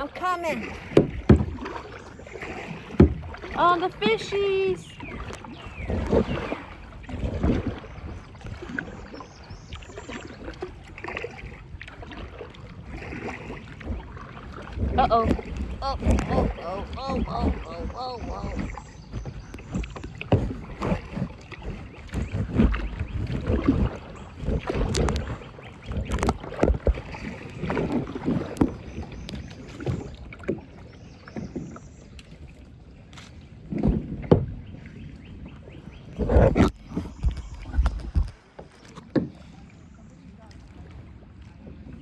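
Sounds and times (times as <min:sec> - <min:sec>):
paddle strokes splashing water: 0:00.0 - 0:42.0
paddle knocks: 0:00.2 - 0:30.6.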